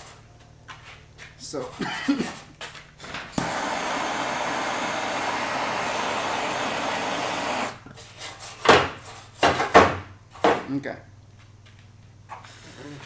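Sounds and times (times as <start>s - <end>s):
steady rushing hiss: 1.0s - 9.4s.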